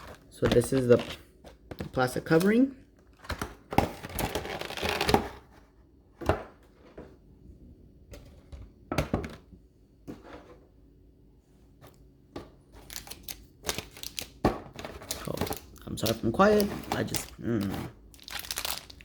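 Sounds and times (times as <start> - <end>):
plastic wrapping rustling: 0.0 - 1.3, 3.9 - 5.1, 12.8 - 19.0.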